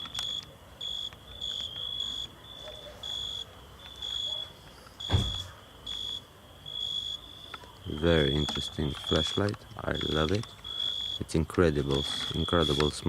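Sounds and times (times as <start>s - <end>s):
night insects chirping: 0.0s - 13.0s
short thump: 5.1s - 5.5s.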